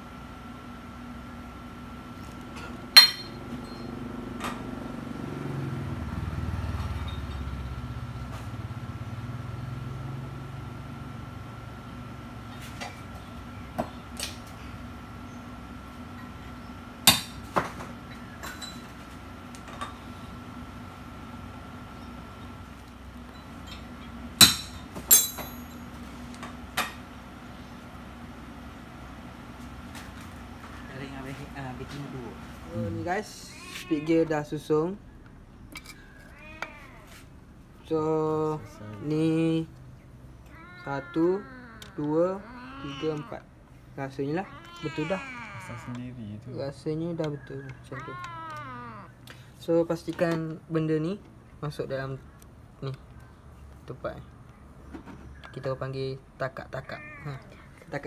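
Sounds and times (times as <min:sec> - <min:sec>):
metal-on-metal clink: 0:03.0 - 0:03.9, 0:24.6 - 0:25.8.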